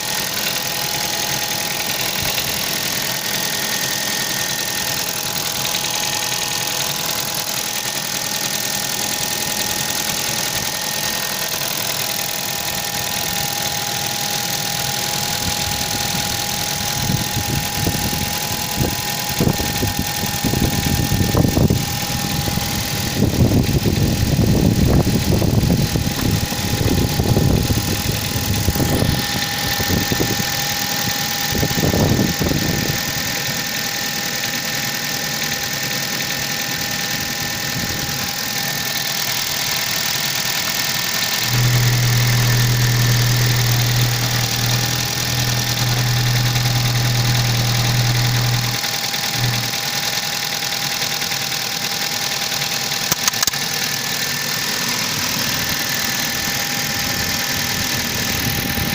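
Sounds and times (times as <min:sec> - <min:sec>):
car engine idling with knock: 0:00.0 - 0:58.9
loud steady low hum: 0:14.8 - 0:33.1, 0:41.4 - 0:49.8.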